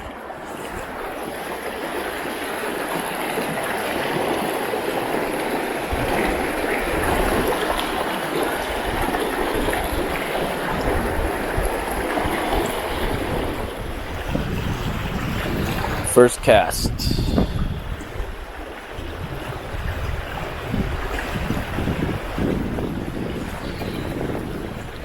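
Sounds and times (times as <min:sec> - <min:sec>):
water rushing over rocks: 0:00.0 - 0:19.8
low microphone rumble: 0:16.9 - 0:18.2.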